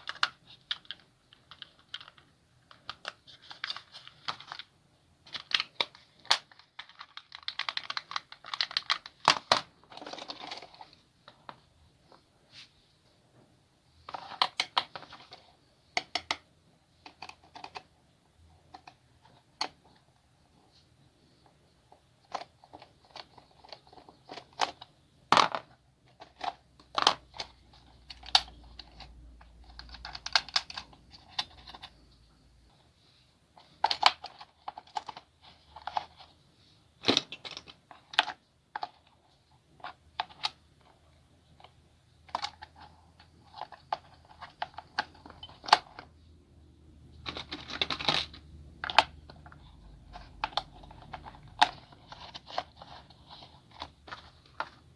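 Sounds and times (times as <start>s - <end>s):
plastic toy parts clicking: 5.3s - 10.8s, 22.2s - 31.9s, 47.2s - 54.8s
packaging crinkling: 5.3s - 11.0s.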